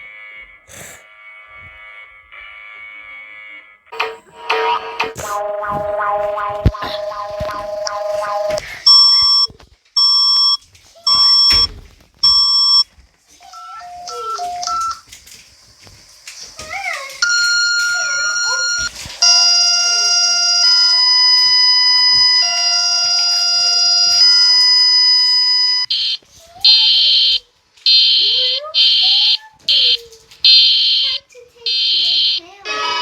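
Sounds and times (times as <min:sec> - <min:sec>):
sustained multi-tone alarm: 0:00.0 - 0:12.8, 0:13.6 - 0:15.1, 0:17.2 - 0:33.0
wavering pitch sweeps: 0:04.0 - 0:08.6
lower beeps: 0:04.0 - 0:12.8
short multi-tone beeps: 0:04.0 - 0:12.8, 0:17.2 - 0:33.0.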